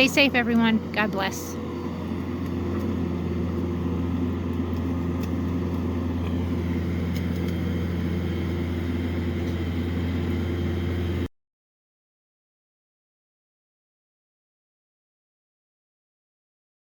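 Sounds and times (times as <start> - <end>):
steady tones: 0.0 - 10.8
low mechanical hum: 0.0 - 11.3.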